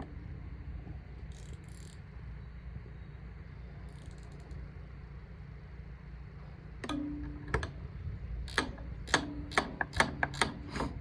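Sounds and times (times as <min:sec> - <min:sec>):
low steady hum: 0:00.0 - 0:11.0
sharp metallic clicks: 0:06.8 - 0:11.0.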